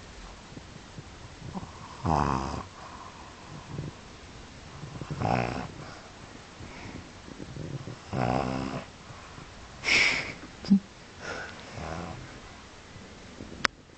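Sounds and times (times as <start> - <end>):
dog snoring: 1.0 - 10.0, 11.3 - 12.6.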